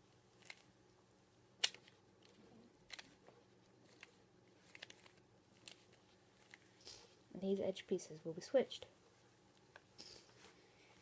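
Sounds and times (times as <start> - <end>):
puzzle cube plastic clicks: 1.6 - 3.2, 3.8 - 6.7.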